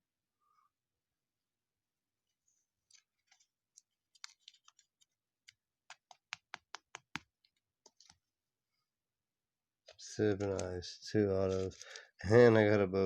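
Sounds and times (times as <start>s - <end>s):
trading cards clicking: 4.1s - 8.1s, 10.3s - 10.8s.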